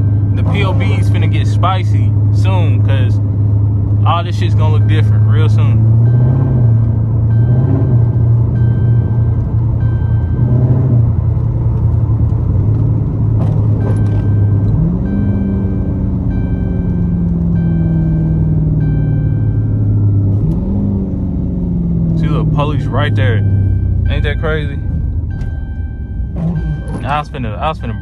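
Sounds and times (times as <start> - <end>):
car engine revving: 0.0 - 28.0
seatbelt warning chime dinging: 4.1 - 10.5, 13.7 - 20.6, 22.1 - 28.0.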